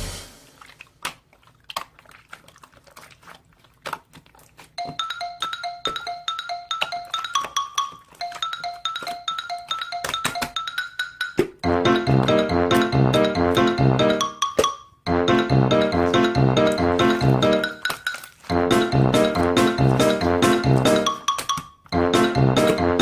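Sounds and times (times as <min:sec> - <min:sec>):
bell-like mallet tune: 0:04.8 - 0:18.0.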